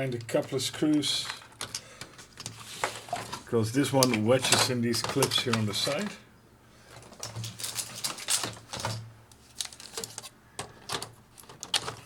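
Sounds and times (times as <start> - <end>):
plastic keyboard clicks and knocks: 10.6 - 12.0.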